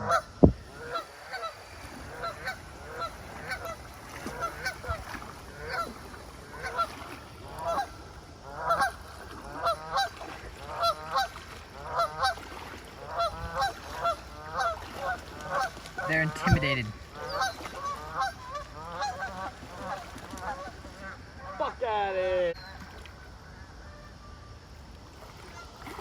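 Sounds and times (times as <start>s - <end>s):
goose honking: 0.0s - 7.0s, 7.6s - 9.0s, 9.6s - 12.4s, 13.0s - 21.7s.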